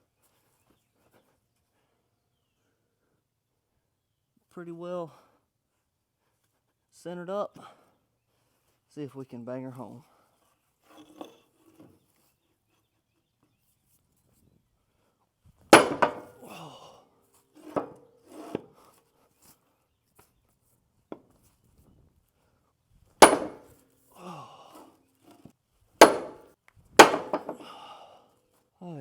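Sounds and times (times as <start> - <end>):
heavy blows on wood ringing: 15.8 - 16.6, 17.6 - 18.6, 23.2 - 23.8, 26.0 - 27.7.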